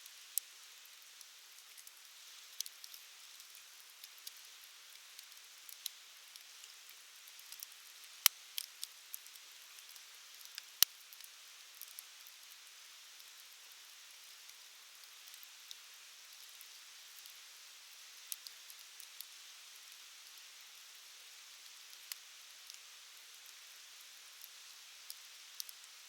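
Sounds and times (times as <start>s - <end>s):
firewood crackling and popping: 7.3s - 12.0s.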